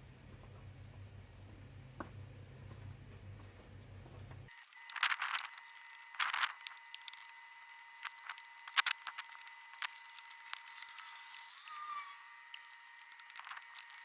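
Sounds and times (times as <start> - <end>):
faint high whine: 4.5 - 14.0.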